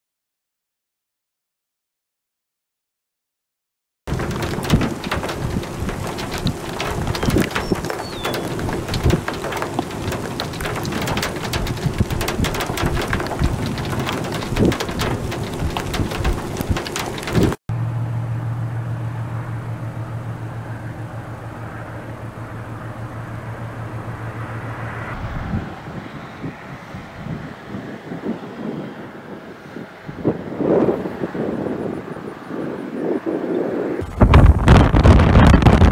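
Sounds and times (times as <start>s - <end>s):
rain and wind on microphone: 4.1s - 17.6s, 19.7s - 35.9s
low vehicle hum: 4.1s - 27.3s.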